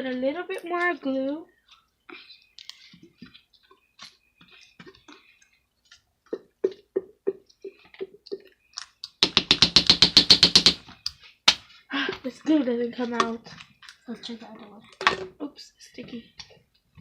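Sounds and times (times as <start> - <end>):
fast run of sharp clicks: 9.2 - 10.8.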